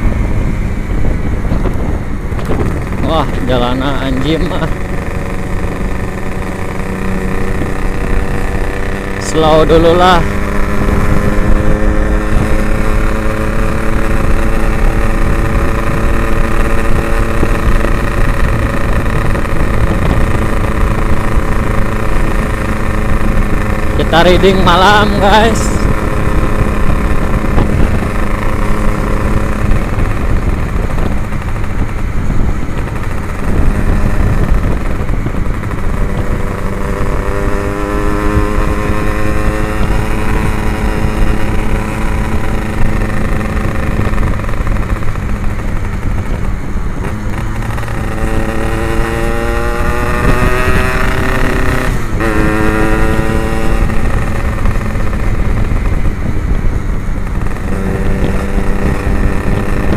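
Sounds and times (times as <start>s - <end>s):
motorcycle engine accelerating: 0.0s - 59.9s.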